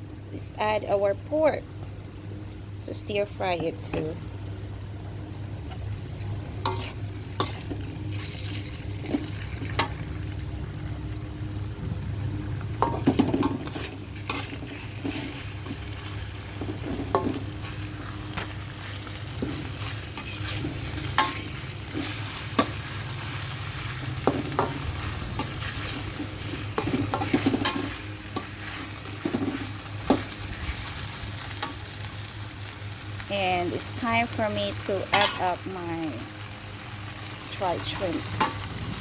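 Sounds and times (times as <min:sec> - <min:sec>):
steady low hum: 0:00.0 - 0:39.0
meat sizzling in hot oil: 0:05.8 - 0:39.0
spatula scraping a wok: 0:06.6 - 0:09.4, 0:12.9 - 0:31.9.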